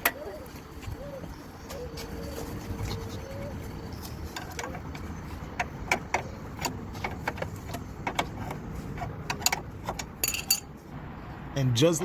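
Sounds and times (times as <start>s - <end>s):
metallic clicks and knocks: 4.2s - 10.8s.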